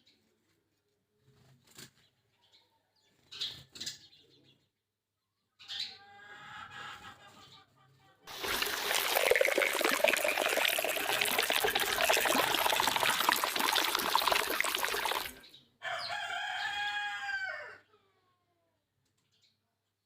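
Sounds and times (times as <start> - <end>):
rooster crowing: 15.8 - 17.8.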